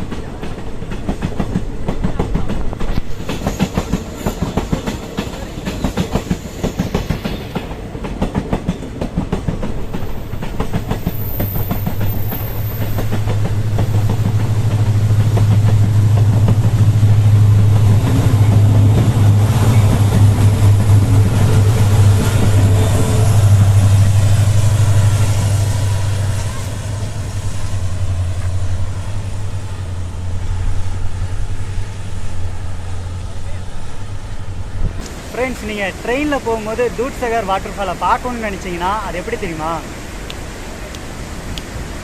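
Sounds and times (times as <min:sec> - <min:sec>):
train wheels clickety-clack: 0:00.0 - 0:29.9
low engine drone: 0:13.1 - 0:35.0.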